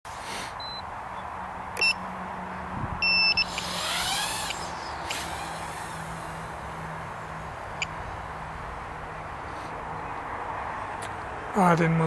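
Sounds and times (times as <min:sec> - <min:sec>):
high electronic beeps: 0:03.0 - 0:03.6.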